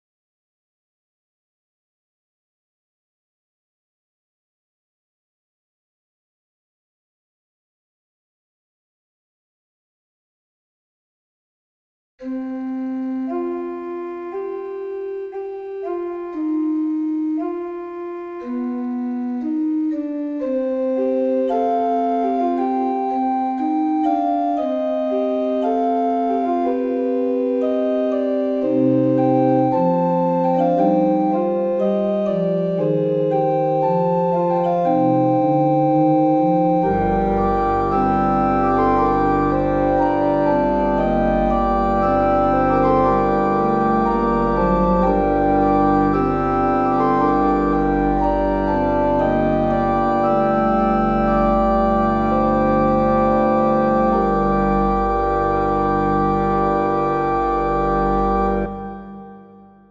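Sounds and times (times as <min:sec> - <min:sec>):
organ chords: 0:12.2 - 0:59.9
deep bass line: 0:28.3 - 0:59.9.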